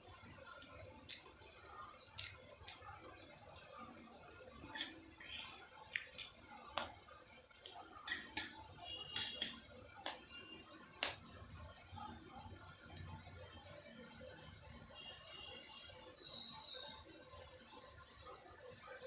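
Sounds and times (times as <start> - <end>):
wet chewing mouth smacks: 2.2 - 3.3, 4.8 - 6.9.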